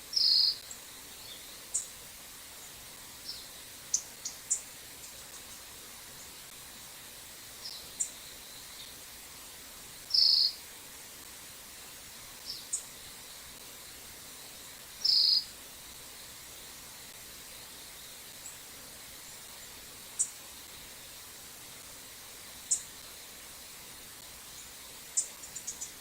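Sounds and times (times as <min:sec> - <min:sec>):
birds calling: 0:15.0 - 0:15.5.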